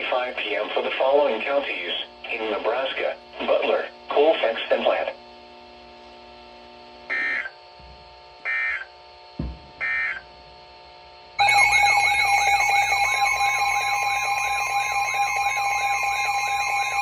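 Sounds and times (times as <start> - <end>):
warbling electronic alert tone: 7.1 - 7.5, 11.4 - 17.0
digital data tone bursts: 7.1 - 7.6, 8.5 - 8.9, 9.8 - 10.2, 11.4 - 17.0
low thump: 9.4 - 9.8.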